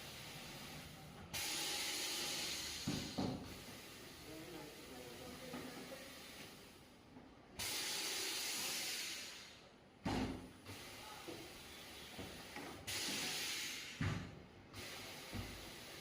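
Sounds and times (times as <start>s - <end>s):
compressed air hissing: 0.0s - 4.5s, 7.6s - 9.7s, 10.7s - 14.1s, 14.7s - 16.0s.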